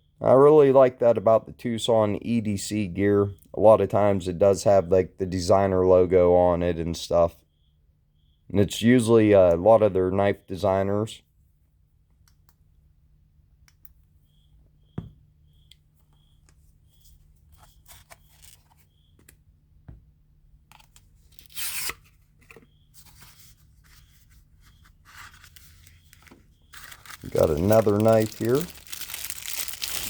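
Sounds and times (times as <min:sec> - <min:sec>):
packaging ripping: 0:21.3 - 0:22.0, 0:26.7 - 0:30.0.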